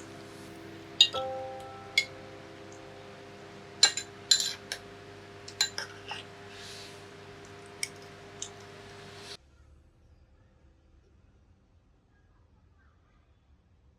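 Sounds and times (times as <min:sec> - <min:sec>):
soft sustained musical tone: 0:00.0 - 0:05.4
cutlery clinking against dishes: 0:01.0 - 0:02.8, 0:03.8 - 0:06.3.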